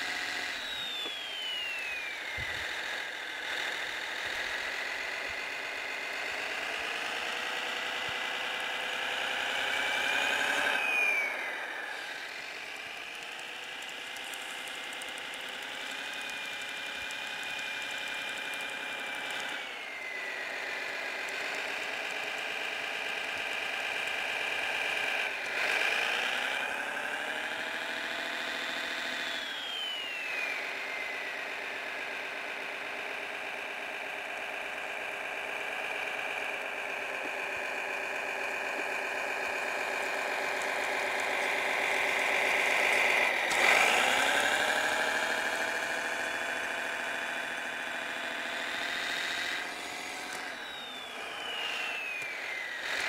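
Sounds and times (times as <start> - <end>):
high whine: 0.0 - 3.2
simulated engine through small speaker: 0.0 - 53.0.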